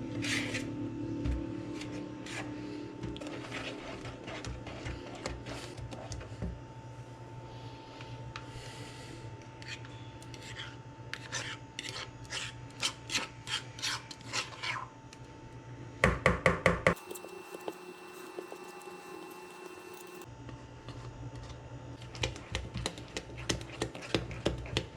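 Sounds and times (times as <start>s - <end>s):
kitchen utensil scraping: 9.6s - 14.9s, 17.0s - 20.3s.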